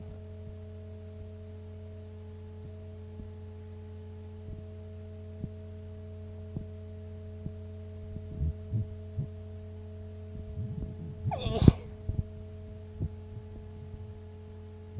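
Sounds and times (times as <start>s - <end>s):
person sneezing: 11.3s - 11.9s.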